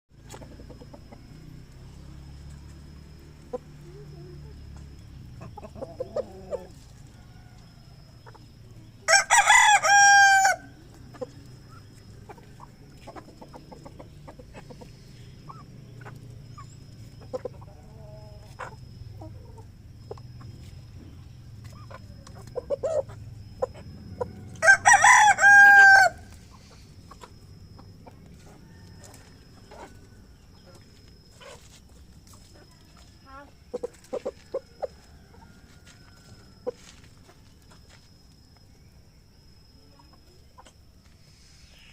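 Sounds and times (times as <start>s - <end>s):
soft chicken clucks: 0.2s - 9.2s, 9.9s - 24.6s, 25.7s - 38.7s, 39.6s - 41.9s
rooster crowing: 9.0s - 10.8s, 24.2s - 26.4s.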